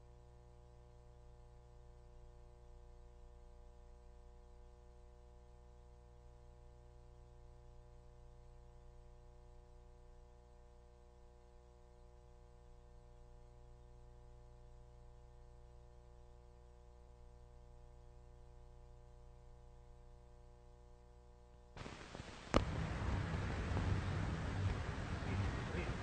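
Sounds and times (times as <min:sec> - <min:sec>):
faint hum of pure tones: 0:00.0 - 0:26.0
hiss and crackle of old recording: 0:00.0 - 0:26.0.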